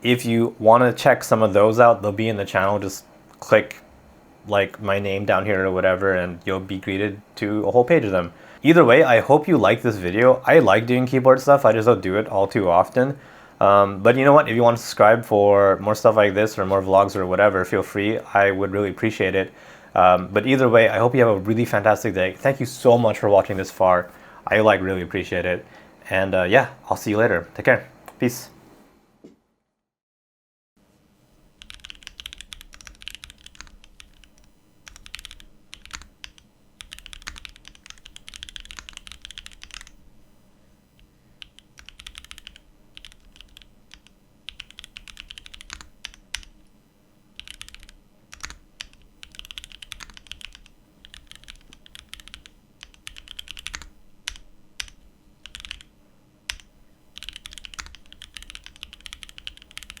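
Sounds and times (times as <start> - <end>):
mechanical keyboard typing: 31.6 - 40.0, 41.4 - 46.6, 47.4 - 55.9, 56.5 - 60.0.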